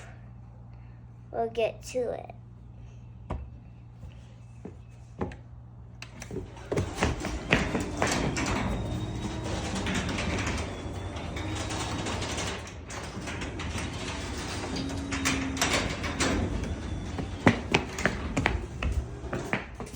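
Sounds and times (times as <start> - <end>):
garage door opener rattling: 6.0 - 19.9.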